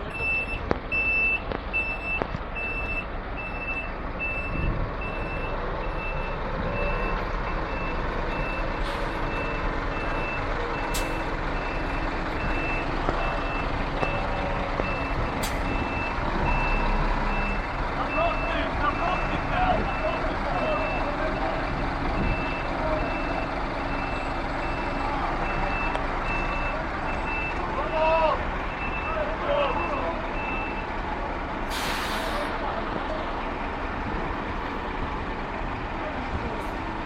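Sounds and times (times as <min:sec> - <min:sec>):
truck engine running: 0:00.0 - 0:37.0
reversing alarm beeping: 0:00.1 - 0:21.5, 0:22.2 - 0:27.6, 0:28.6 - 0:30.9
sharp clicks or hisses: 0:31.7 - 0:32.5.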